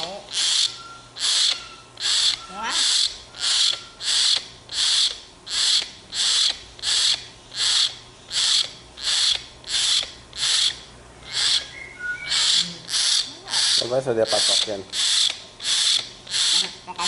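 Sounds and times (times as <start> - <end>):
young myna rasping begging calls: 0.0 - 17.0.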